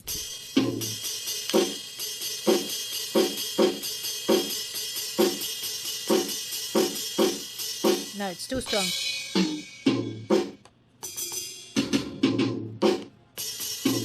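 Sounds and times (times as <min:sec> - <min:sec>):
ringing cymbal wash: 0:00.2 - 0:11.8
electronic drum hits: 0:06.1 - 0:10.6.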